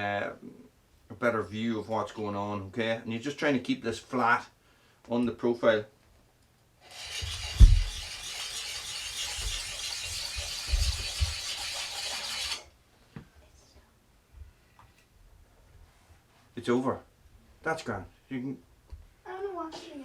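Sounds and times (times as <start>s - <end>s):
sharpening bit rasping on axe edge: 6.9s - 12.6s.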